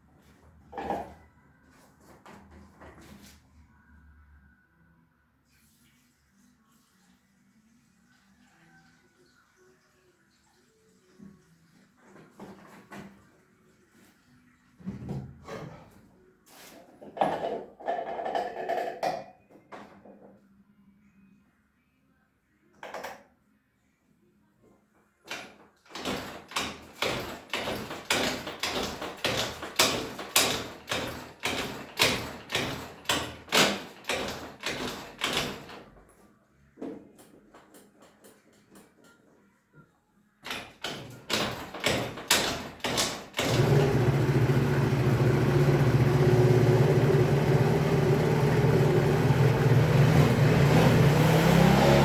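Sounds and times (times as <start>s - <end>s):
scooter kick starter cranking: 41.3s - 50.6s
scooter engine running: 43.4s - 52.0s.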